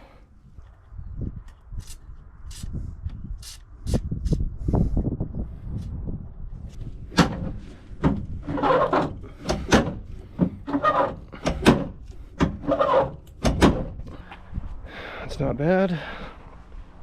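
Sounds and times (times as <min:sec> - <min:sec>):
latch rubbing: 0:07.1 - 0:14.0
metal latch clicks and clunks: 0:07.1 - 0:14.2.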